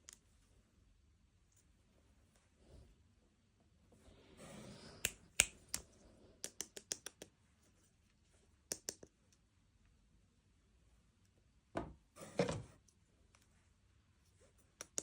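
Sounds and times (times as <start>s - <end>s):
toys clicking and tapping: 6.4s - 7.3s, 14.8s - 15.0s.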